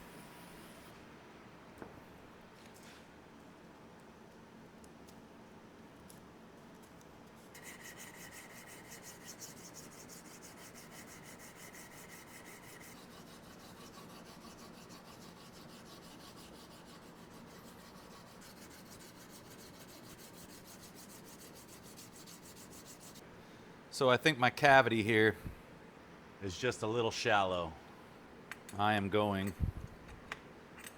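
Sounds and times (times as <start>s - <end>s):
sanding wood: 7.6s - 23.2s.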